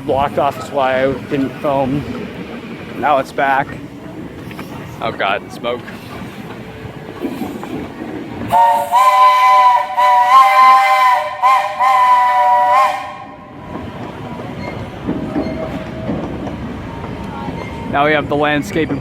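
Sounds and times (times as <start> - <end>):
low rumble of train: 0.0 - 19.0
steam locomotive chime whistle: 8.5 - 13.6.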